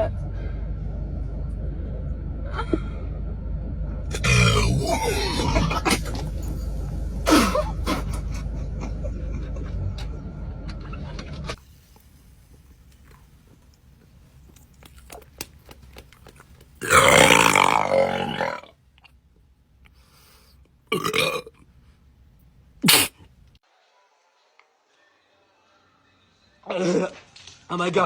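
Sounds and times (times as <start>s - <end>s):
long low rumbling burp: 0.0s - 11.1s, 16.8s - 18.7s, 20.9s - 21.5s
loud burp: 4.1s - 6.6s, 7.2s - 8.2s, 16.8s - 18.7s, 20.9s - 21.5s.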